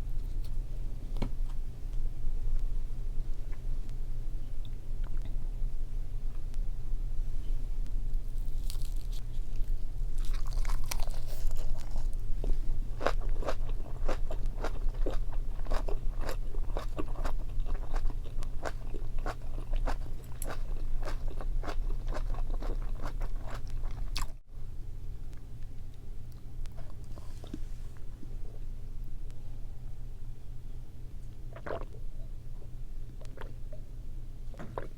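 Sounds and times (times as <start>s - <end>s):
low hum: 0.0s - 34.9s
crunchy chewing: 8.2s - 24.4s.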